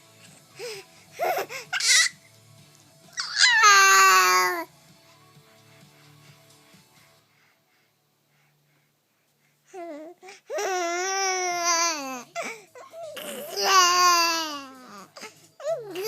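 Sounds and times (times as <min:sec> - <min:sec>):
baby crying: 0:01.2 - 0:02.2, 0:03.2 - 0:04.7, 0:09.8 - 0:16.0.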